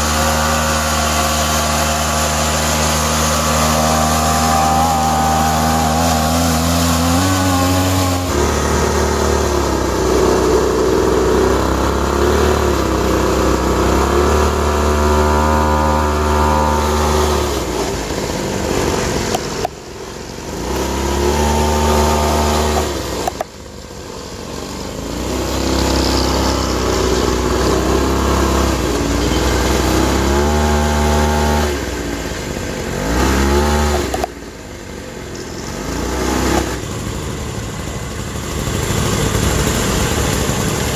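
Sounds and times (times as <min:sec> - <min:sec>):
toy truck motors whining: 0:00.0 - 0:23.5, 0:24.6 - 0:31.6.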